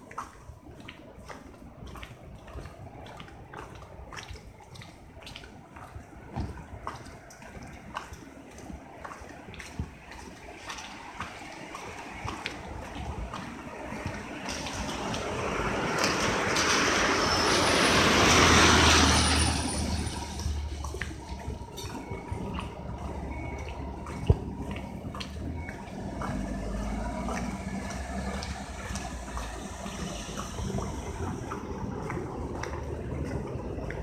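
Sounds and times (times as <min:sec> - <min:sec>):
car passing on wet road: 0:08.9 - 0:34.0.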